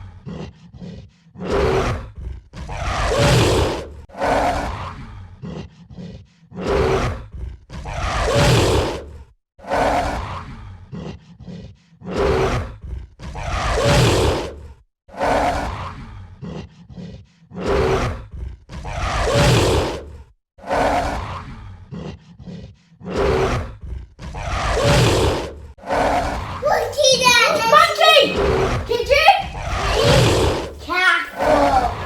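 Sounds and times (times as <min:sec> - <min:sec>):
gorilla roaring: 0:26.0 - 0:32.0.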